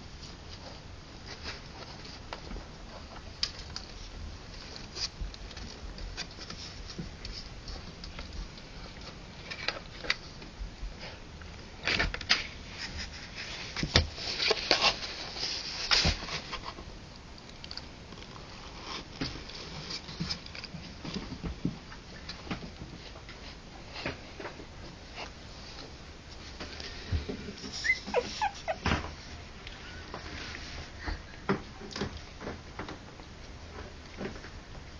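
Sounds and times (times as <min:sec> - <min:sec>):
puppies scrabbling and tapping: 0:27.2 - 0:29.2.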